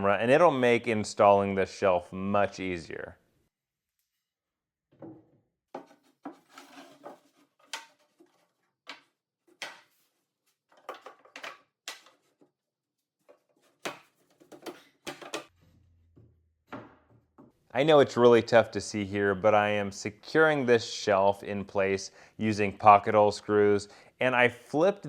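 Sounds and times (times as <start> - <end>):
wooden knocks and clatter: 10.7 - 12.2, 16.2 - 17.6.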